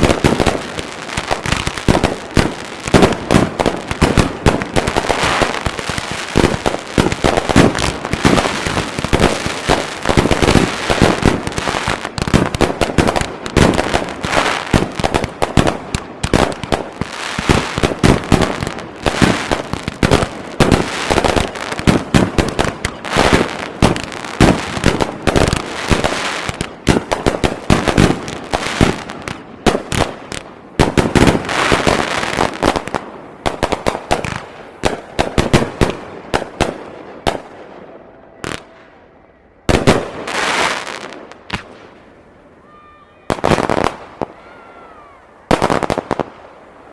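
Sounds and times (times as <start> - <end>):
fireworks bursts and crackling: 0.0 - 38.9, 39.6 - 42.1, 43.3 - 44.8, 45.4 - 46.9.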